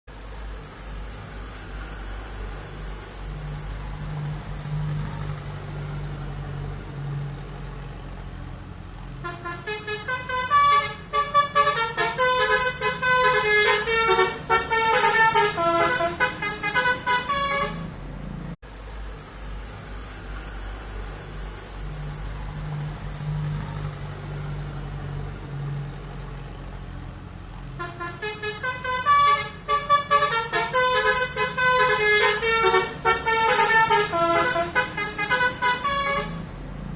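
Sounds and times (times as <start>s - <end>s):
bus engine idling: 0.1s - 36.9s
multi-tone bus horn melody: 9.2s - 18.0s, 27.7s - 36.6s.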